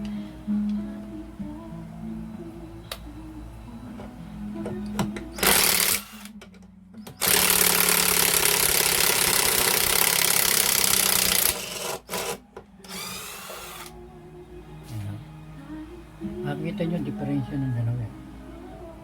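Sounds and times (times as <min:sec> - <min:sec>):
cordless power drill running: 0:05.4 - 0:06.3, 0:07.2 - 0:13.9.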